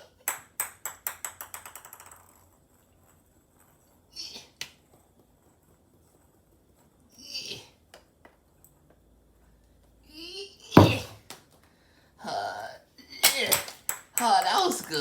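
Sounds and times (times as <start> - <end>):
toy ball bouncing on hard surface: 0.2 - 2.5, 10.8 - 11.4, 13.5 - 15.0.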